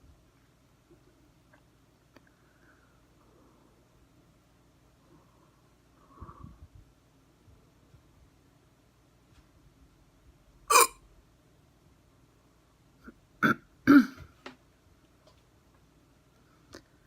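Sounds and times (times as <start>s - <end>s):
person hiccuping: 10.7s - 11.0s, 13.4s - 14.2s.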